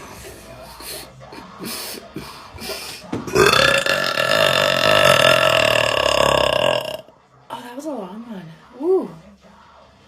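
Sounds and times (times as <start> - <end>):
woman belching: 3.3 - 7.1.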